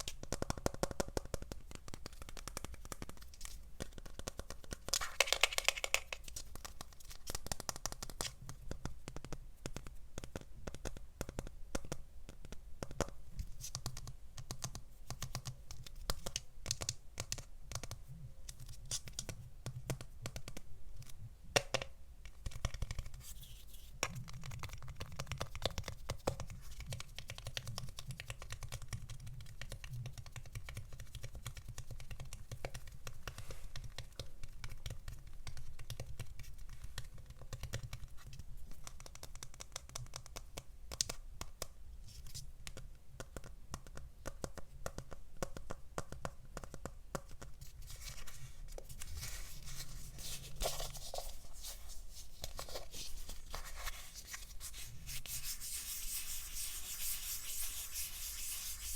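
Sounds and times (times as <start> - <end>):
low steady hum: 47.6 - 58.9.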